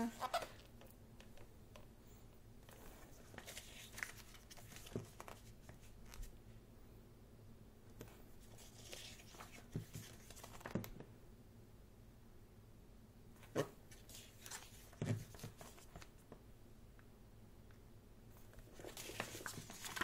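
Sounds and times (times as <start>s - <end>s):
paper pages rustling: 2.6s - 6.3s, 8.4s - 10.9s, 13.4s - 16.1s, 18.4s - 20.0s.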